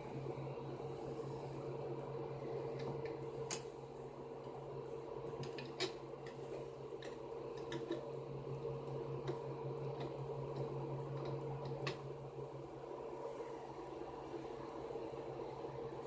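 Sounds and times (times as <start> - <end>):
low machine hum: 0.0 - 16.0
light clicks and taps: 9.2 - 12.0.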